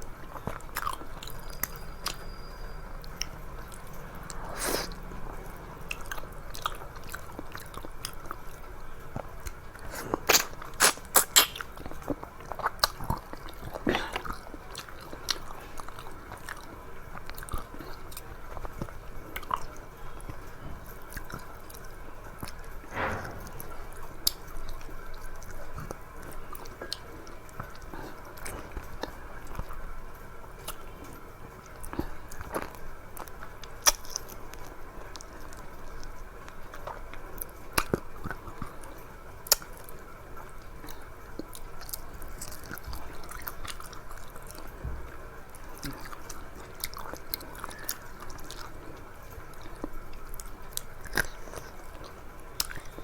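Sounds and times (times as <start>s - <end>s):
person chewing food: 0.2s - 22.6s, 40.8s - 53.0s.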